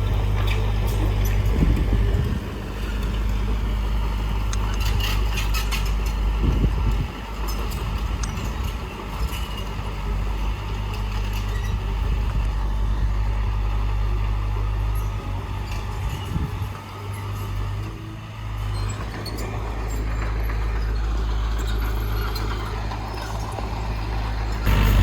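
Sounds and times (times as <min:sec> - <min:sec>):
metallic clanking and rattling: 0:00.0 - 0:10.0, 0:24.6 - 0:25.0
diesel engine running: 0:00.0 - 0:25.0.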